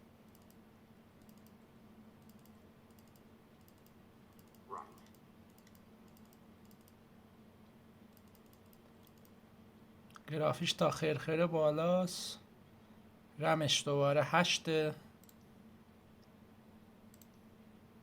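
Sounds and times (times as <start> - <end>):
faint steady hum: 0.0 - 18.0
faint keyboard typing clicks: 0.3 - 0.6, 1.2 - 1.6, 2.2 - 7.0, 8.1 - 9.4, 15.2 - 15.5, 17.1 - 17.5.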